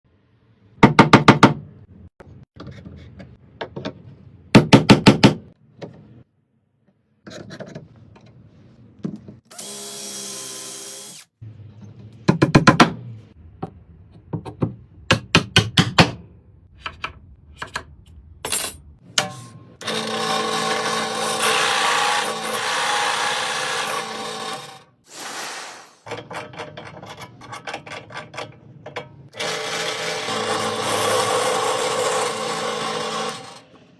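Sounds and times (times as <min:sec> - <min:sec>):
power tool running: 0:19.8 - 0:24.8, 0:29.4 - 0:33.8.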